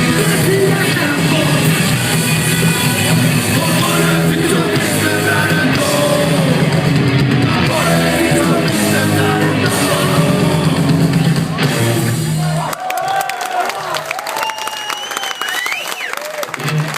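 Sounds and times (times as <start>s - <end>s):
person shouting singing: 0.0s - 1.9s, 3.5s - 6.8s, 7.5s - 11.2s
loud rock music: 0.0s - 12.7s.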